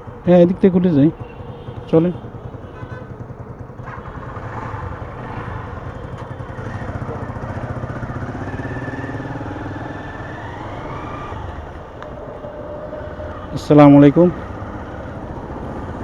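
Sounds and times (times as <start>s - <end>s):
motorcycle engine riding: 0.0s - 16.0s.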